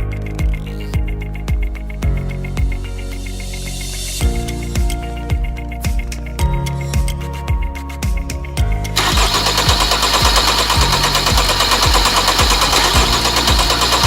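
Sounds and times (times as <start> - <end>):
background music with beat: 0.0 - 14.0
mechanical noise with fine ticking: 8.9 - 14.0.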